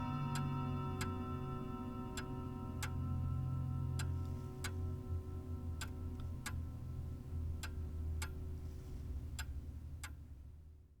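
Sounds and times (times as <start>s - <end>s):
clock strike ringing: 0.0s - 8.6s
grandfather clock ticking: 0.0s - 10.6s.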